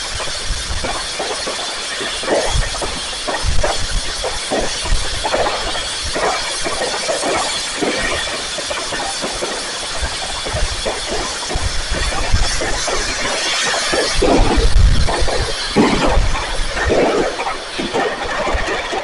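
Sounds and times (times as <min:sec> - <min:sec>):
fireworks crackling and popping: 0:00.0 - 0:19.0.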